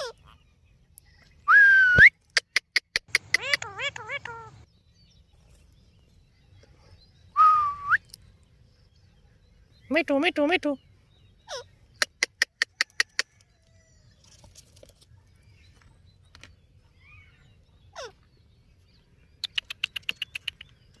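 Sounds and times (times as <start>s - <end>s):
parrot squawking: 3.1s - 4.6s, 11.5s - 12.4s.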